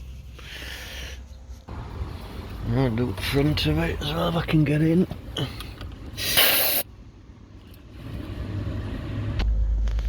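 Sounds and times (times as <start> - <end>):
compressed air hissing blast: 6.2 - 6.9.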